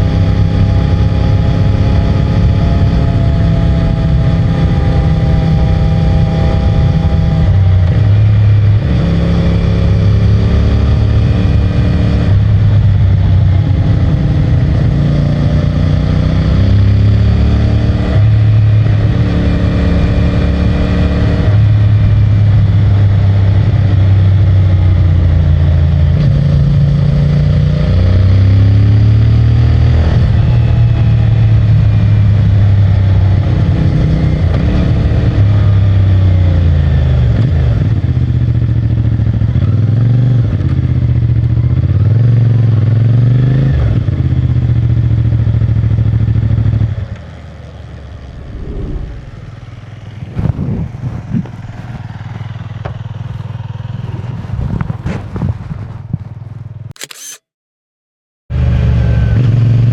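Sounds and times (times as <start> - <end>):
motorcycle engine running: 44.0 - 57.4.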